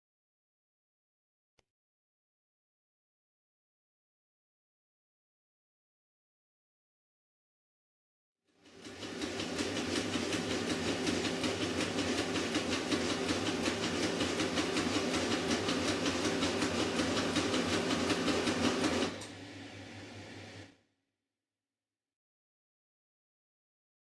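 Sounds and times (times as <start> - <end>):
printer motor hum: 8.6 - 20.6.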